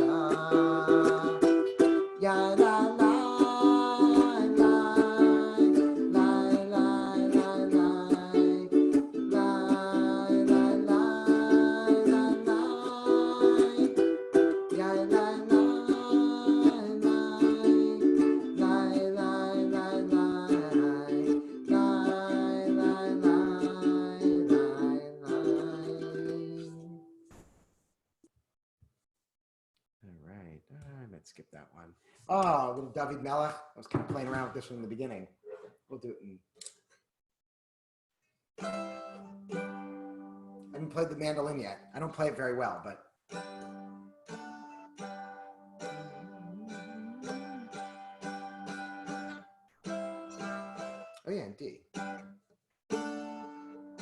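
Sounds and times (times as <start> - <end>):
acoustic guitar strumming: 38.6 - 41.3, 43.3 - 51.2, 52.9 - 54.0.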